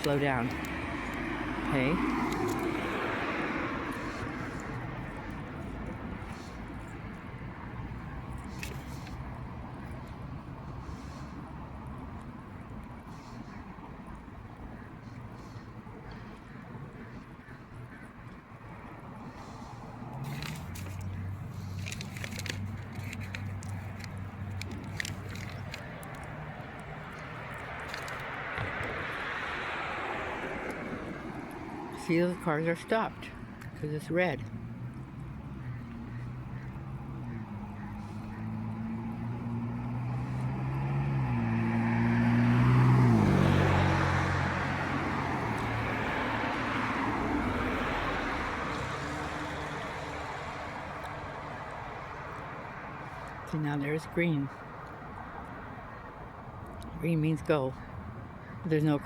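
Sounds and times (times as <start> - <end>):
passing traffic rushing: 0.0 - 59.0
tyre and road noise: 0.0 - 59.0
vehicle engine humming: 0.0 - 59.0
small clicks and crackles: 20.2 - 29.0.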